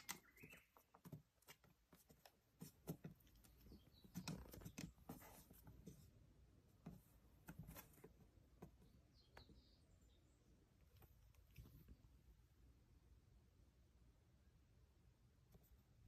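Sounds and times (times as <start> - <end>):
small clicks and taps: 0.0 - 6.0.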